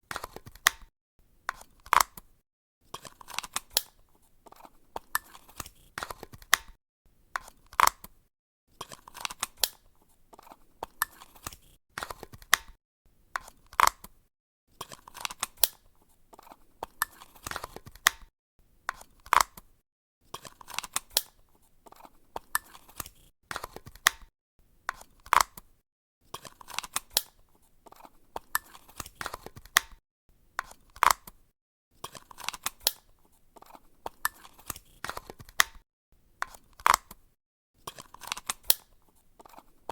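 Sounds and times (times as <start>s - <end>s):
battery cover snap: 0.2s - 0.9s, 12.0s - 12.8s, 17.5s - 18.3s, 23.6s - 24.3s, 29.2s - 30.0s, 34.7s - 35.8s
battery cover clicks and rattles: 1.8s - 2.3s, 5.0s - 6.8s, 10.8s - 12.8s, 16.8s - 18.3s, 19.2s - 19.6s, 22.4s - 24.3s, 25.2s - 25.6s, 28.4s - 30.0s, 32.1s - 33.1s, 34.1s - 35.8s, 36.4s - 37.2s, 37.9s - 39.6s.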